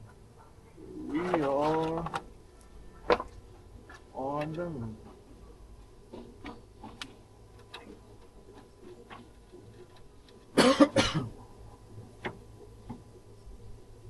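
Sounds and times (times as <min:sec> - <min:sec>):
person coughing: 0:10.6 - 0:11.4.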